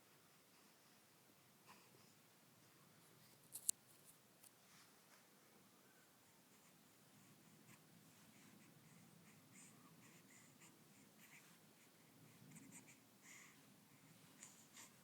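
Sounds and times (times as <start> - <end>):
light scratchy ticks and rustles: 2.6 - 5.3.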